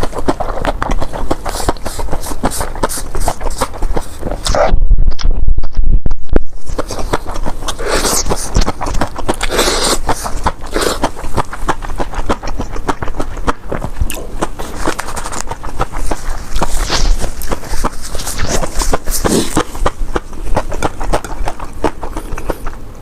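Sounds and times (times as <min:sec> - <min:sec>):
chewing noodles: 0:00.0 - 0:05.2, 0:06.5 - 0:23.0
wet mouth clicks and smacks: 0:06.6 - 0:22.8.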